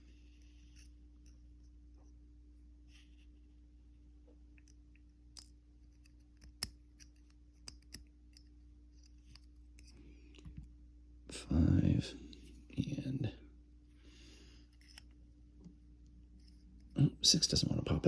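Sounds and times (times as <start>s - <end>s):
small clicks of lock parts: 4.6s - 9.9s, 14.7s - 15.1s.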